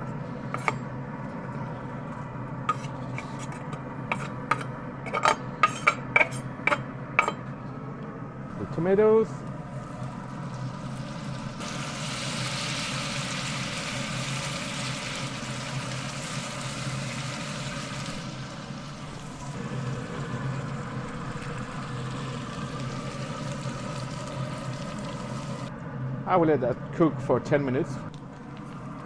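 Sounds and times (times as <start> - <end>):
steady low hum: 0.0 - 12.2, 15.2 - 29.0
tomatoes sizzling in a pan: 9.7 - 25.7.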